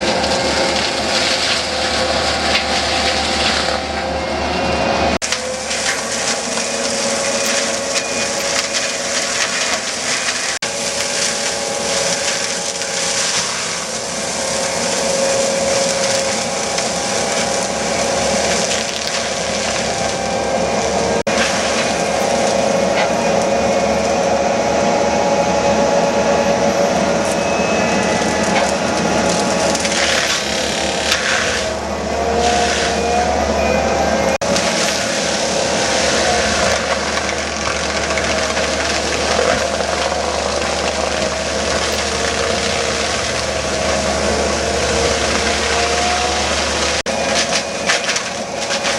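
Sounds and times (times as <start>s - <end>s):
wood crunching and splintering: 0.0s - 4.1s, 5.2s - 24.3s, 27.2s - 33.2s, 34.4s - 48.9s
forestry mulcher whining: 0.0s - 48.9s.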